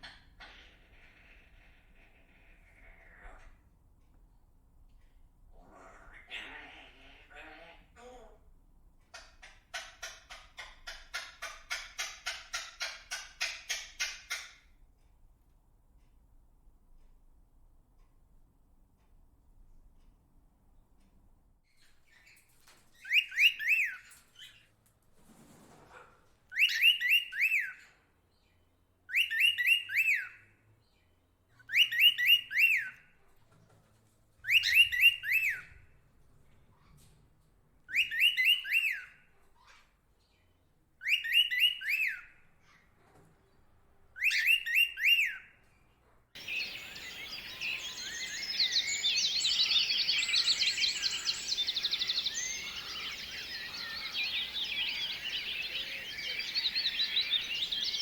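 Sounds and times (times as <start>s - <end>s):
chorus of many birds calling: 46.4s - 58.0s.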